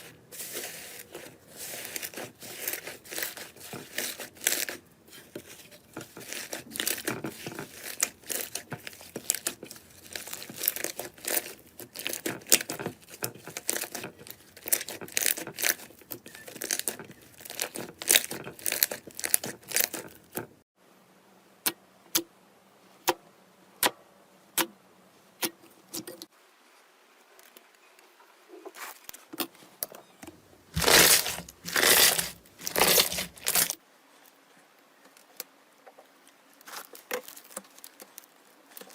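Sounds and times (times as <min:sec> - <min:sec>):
slime crackling and popping: 0:01.8 - 0:20.4, 0:30.8 - 0:33.8, 0:36.6 - 0:38.9.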